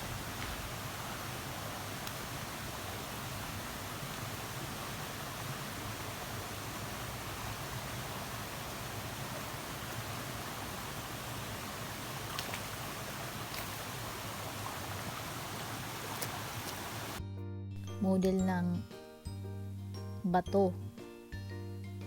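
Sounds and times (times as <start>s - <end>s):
creek water flowing over stones: 0.0s - 17.2s
faint clicks: 12.3s - 12.7s.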